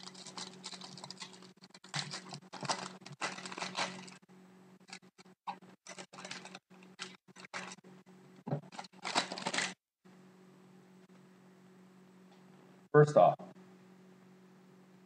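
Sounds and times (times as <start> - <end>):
plastic packaging crinkling and tearing: 0.0 - 4.2, 5.8 - 7.8, 8.6 - 9.8.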